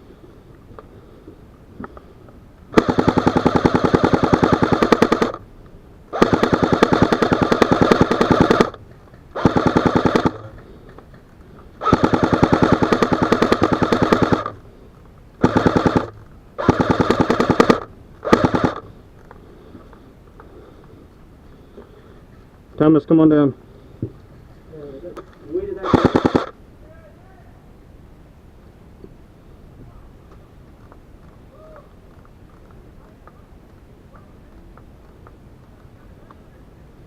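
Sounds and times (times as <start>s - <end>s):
airsoft gun automatic bursts: 2.7s - 5.4s, 6.1s - 10.7s, 11.8s - 14.6s, 15.4s - 18.9s, 25.6s - 26.6s.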